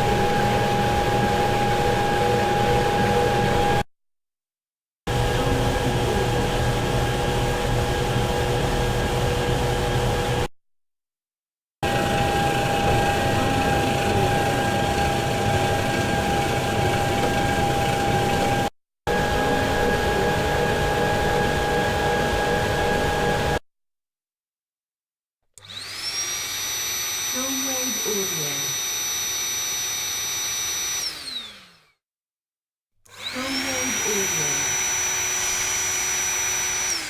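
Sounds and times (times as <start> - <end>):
industrial machinery hum: 11.8 - 23.6.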